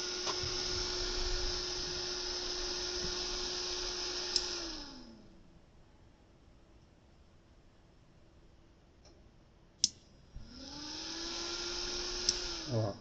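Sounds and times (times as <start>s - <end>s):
cooling fan running: 0.0s - 5.5s, 10.3s - 13.0s.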